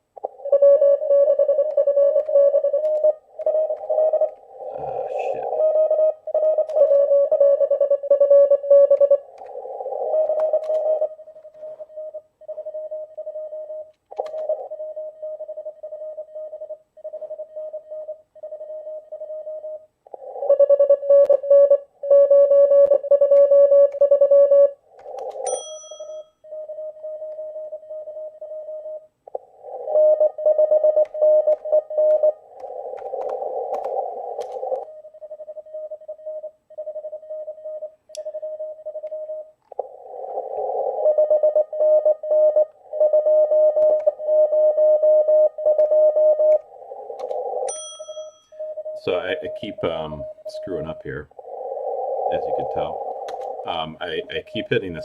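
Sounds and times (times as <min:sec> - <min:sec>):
morse code beeping: 0:00.3 - 0:19.8, 0:20.6 - 0:29.0, 0:29.9 - 0:39.6, 0:41.0 - 0:51.2.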